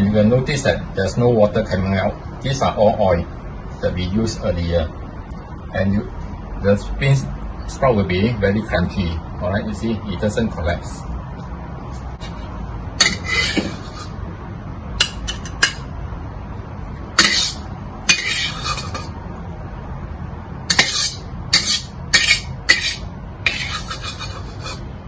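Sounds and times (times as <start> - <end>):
metal utensils scraping a dish: 13.0 - 14.2, 17.2 - 19.1, 20.7 - 24.8.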